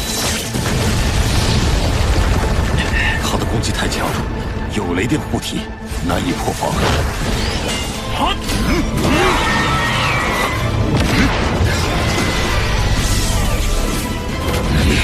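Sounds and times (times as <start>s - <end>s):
battle crashes and booms: 0.0s - 4.6s
dramatic background music: 0.0s - 15.0s.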